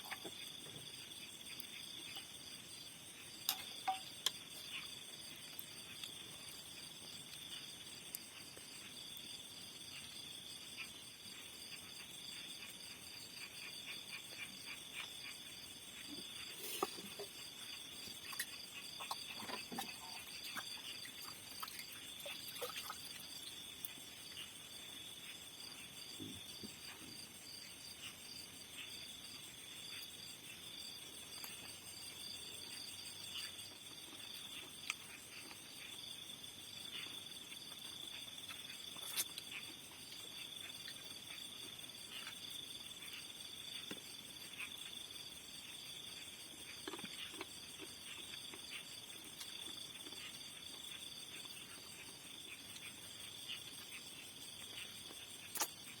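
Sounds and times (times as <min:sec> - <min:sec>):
crickets and insects trilling: 0:00.0 - 0:56.0.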